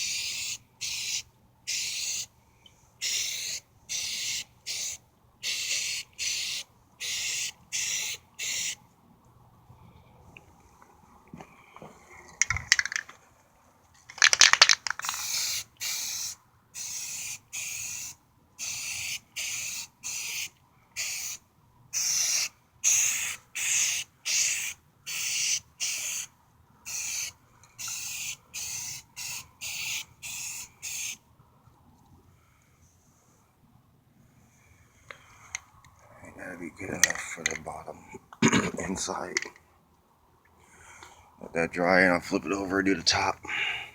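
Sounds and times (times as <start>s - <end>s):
short hissing spray bursts: 0.0s - 2.3s, 3.0s - 8.8s, 15.0s - 21.4s, 22.0s - 26.3s, 26.9s - 31.2s
aerosol can rattle: 12.4s - 13.1s, 14.0s - 16.3s.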